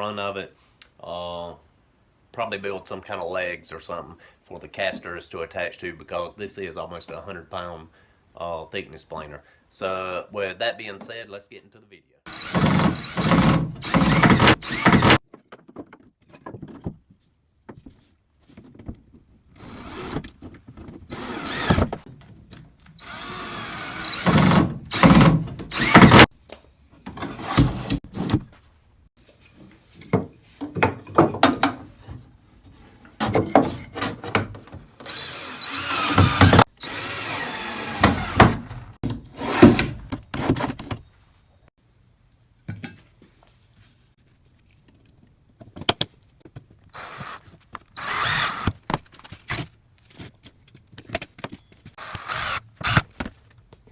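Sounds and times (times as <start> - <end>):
power drill driving screws: 12.3 - 15.2, 19.6 - 20.2, 21.1 - 21.9, 22.9 - 26.3, 34.8 - 39.0, 46.9 - 47.4, 48.0 - 48.8, 52.0 - 53.1.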